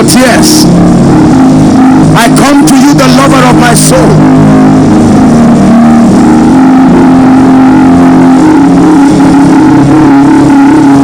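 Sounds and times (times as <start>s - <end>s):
congregation praying: 0.0s - 5.0s
keyboard holding chords: 0.0s - 11.0s.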